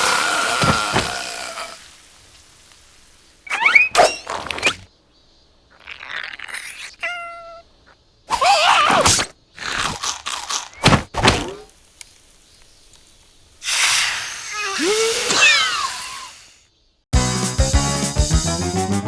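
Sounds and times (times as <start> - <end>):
cartoon character squealing: 8.3 - 9.2, 13.7 - 16.5.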